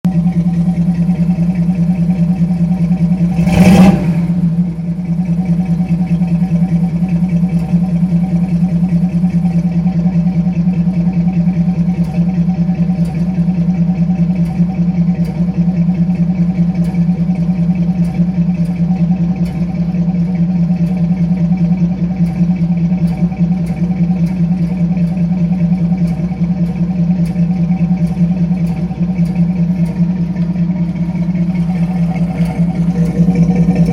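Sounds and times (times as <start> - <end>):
engine idling: 0.0 - 33.9.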